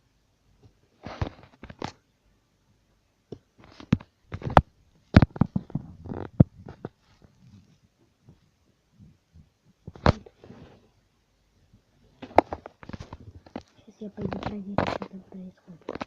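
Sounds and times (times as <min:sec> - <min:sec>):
rustling: 0:03.6 - 0:11.0, 0:11.7 - 0:16.0.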